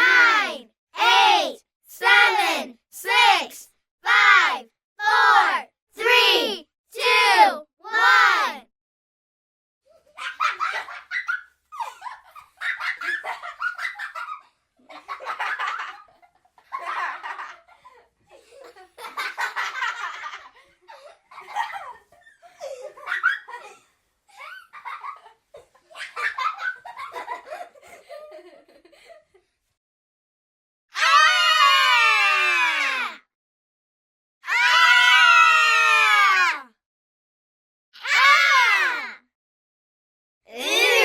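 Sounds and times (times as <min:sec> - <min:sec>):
child laughing: 0:18.3 - 0:29.0.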